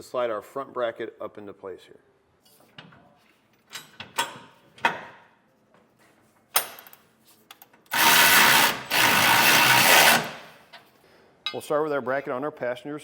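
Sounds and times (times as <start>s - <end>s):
power tool running: 7.9s - 10.7s.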